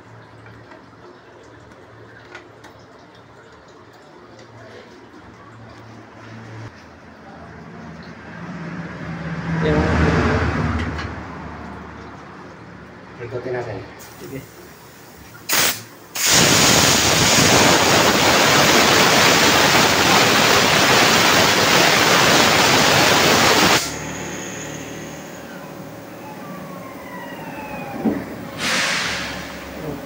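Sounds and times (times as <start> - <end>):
air blow gun hissing: 14.0 - 25.6, 28.6 - 30.0
faint whine falling in pitch: 18.8 - 28.6.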